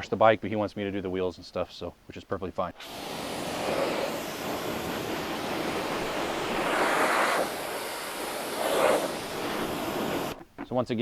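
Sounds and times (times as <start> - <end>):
hose water spraying on wheel: 2.8 - 10.4.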